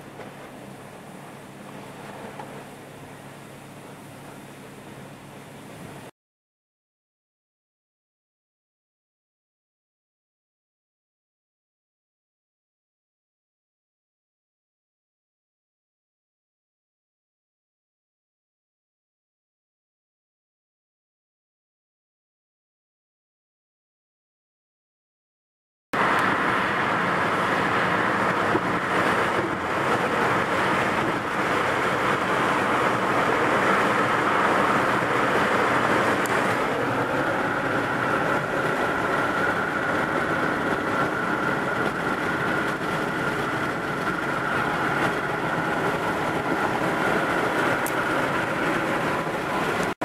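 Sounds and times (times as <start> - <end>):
road and wind noise in car: 0.0 - 6.1, 26.0 - 50.0.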